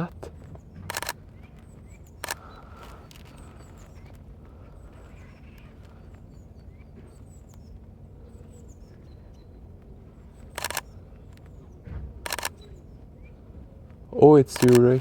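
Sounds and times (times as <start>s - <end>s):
small birds chirping: 0.0s - 15.0s
camera shutter clicks: 0.9s - 1.2s, 2.2s - 2.4s, 10.5s - 10.9s, 12.2s - 12.6s, 14.5s - 15.0s.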